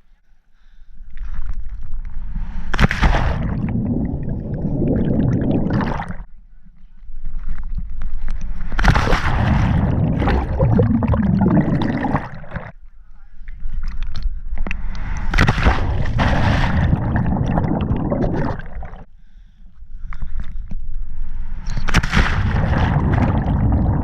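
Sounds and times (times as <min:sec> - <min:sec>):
water sloshing and gurgling: 0:01.1 - 0:06.3, 0:07.3 - 0:12.8, 0:13.5 - 0:19.1, 0:20.3 - 0:24.0
low rumble: 0:01.8 - 0:07.0, 0:07.8 - 0:12.8, 0:14.3 - 0:19.1, 0:20.9 - 0:24.0
sharp splash: 0:02.6 - 0:04.8, 0:14.8 - 0:19.1, 0:21.8 - 0:24.0.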